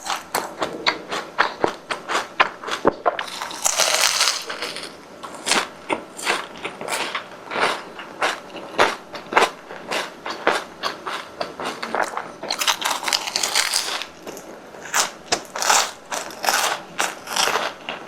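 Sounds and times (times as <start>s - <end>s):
crunchy chewing of fried food: 0.0s - 18.0s.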